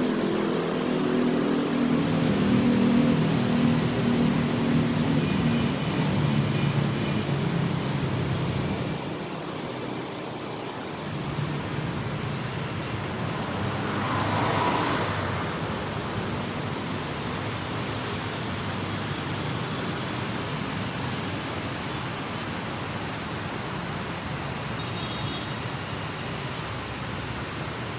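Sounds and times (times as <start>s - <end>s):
vehicle engine hum: 0.0s - 19.2s
steady traffic hum: 0.0s - 27.9s
vehicle passing: 12.4s - 16.4s.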